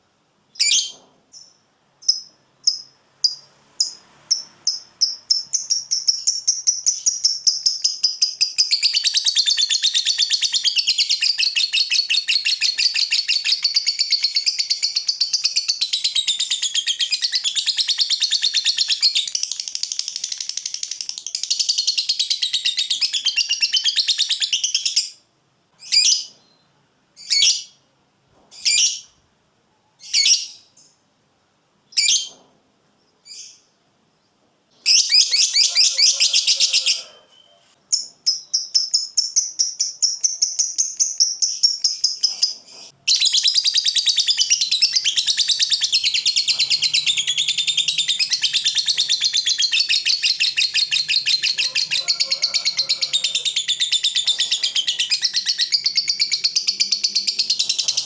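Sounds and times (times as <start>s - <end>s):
lovebird chattering song: 0.6s - 25.2s, 34.9s - 58.0s.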